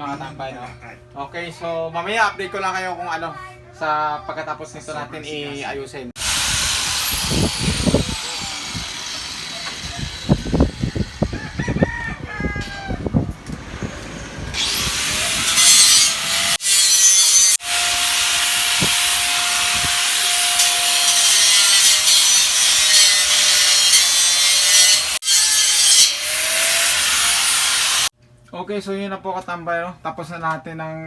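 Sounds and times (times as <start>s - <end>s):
angle grinder cutting metal: 6.2s - 11.4s, 13.6s - 28.1s.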